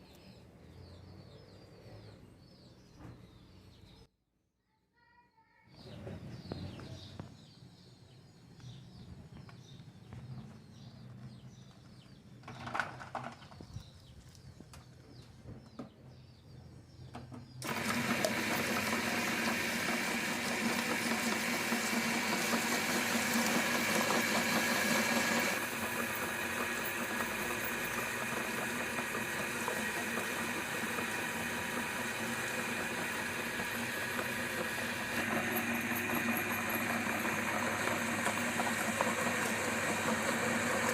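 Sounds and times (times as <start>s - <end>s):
electric meat grinder running: 17.6s - 40.9s.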